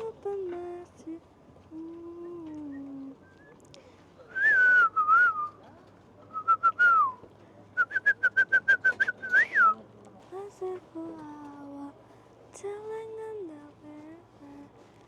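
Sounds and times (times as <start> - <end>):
person whistling a tune: 4.4 - 5.6, 6.3 - 7.2, 7.8 - 9.8.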